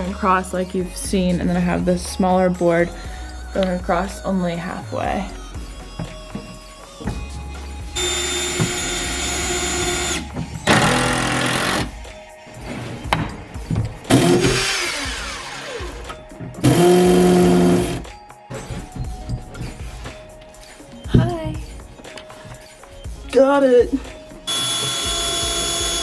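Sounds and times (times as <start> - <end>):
cordless drill driving screws: 8.0 - 11.9, 14.1 - 16.0, 16.6 - 18.0, 24.5 - 26.0.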